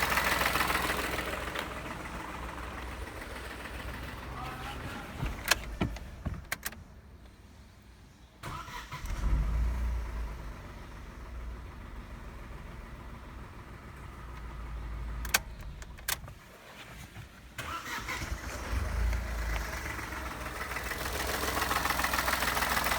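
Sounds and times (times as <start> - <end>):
car engine starting and running: 0.0 - 7.4, 8.4 - 22.9.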